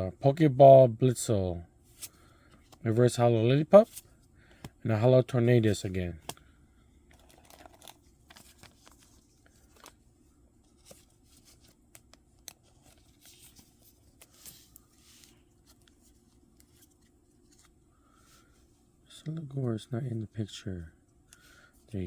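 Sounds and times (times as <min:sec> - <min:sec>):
foil wrapper crinkling: 0:07.1 - 0:10.0.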